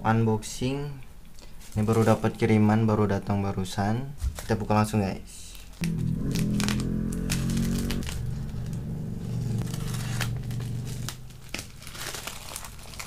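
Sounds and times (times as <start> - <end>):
parcel wrapping torn and crinkled: 1.6 - 2.5, 5.5 - 8.8, 9.4 - 13.0.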